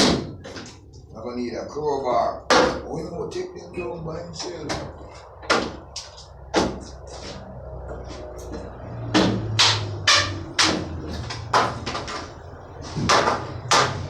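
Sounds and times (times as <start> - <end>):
hammer knocking on metal: 13.0 - 14.0.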